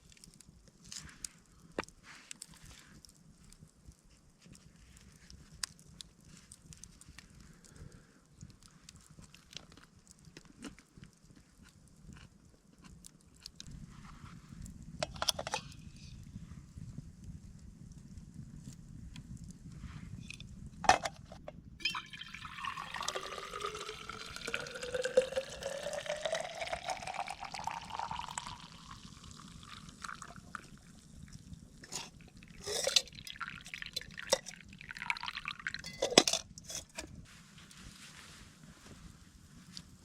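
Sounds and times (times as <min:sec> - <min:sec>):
liquid pouring into container: 0:21.8 - 0:37.0.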